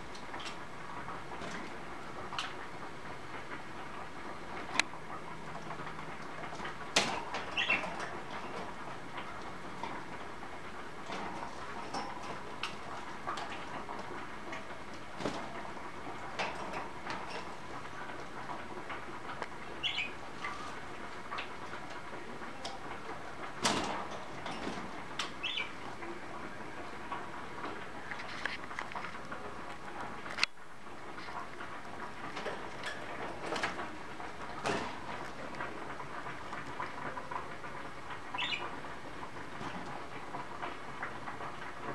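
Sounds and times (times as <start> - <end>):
bird clicks and rustles: 5.6 - 26.1, 31.1 - 37.6.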